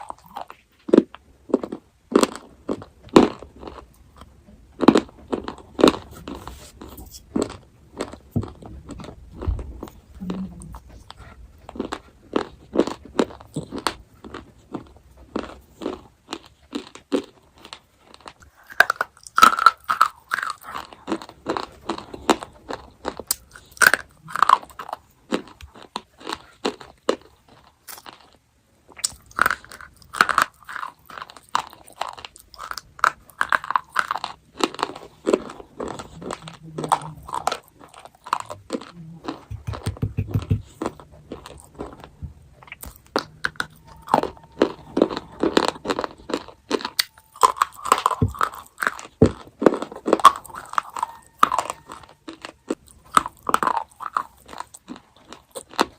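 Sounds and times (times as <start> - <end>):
chocolate crunching chews: 0.0 - 55.9.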